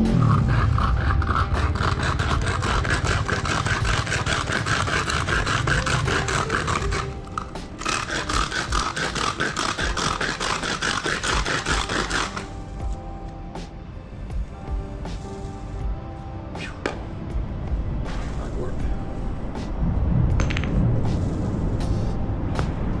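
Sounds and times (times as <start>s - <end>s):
tin can scraping on rough surface: 0.0s - 12.5s.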